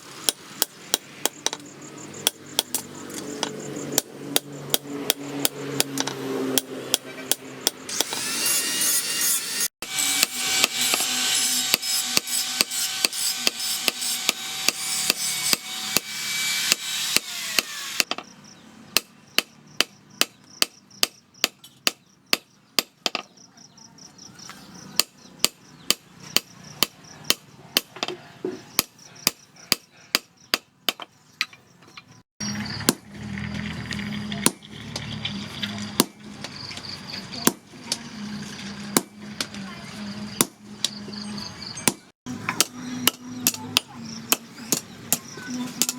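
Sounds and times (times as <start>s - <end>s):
hammer striking steel on anvil: 41.9s - 45.9s.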